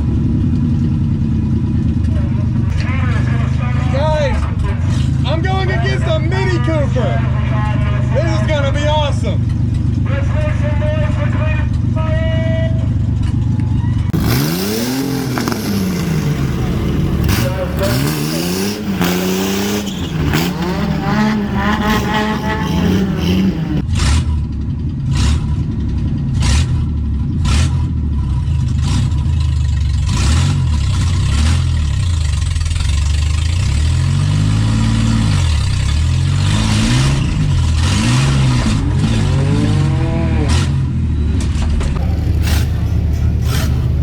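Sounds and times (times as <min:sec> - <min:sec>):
car engine revving hard: 0:14.1 - 0:24.4, 0:30.0 - 0:32.0, 0:33.6 - 0:41.1, 0:42.0 - 0:44.0
clunks and rattles: 0:40.5 - 0:44.0.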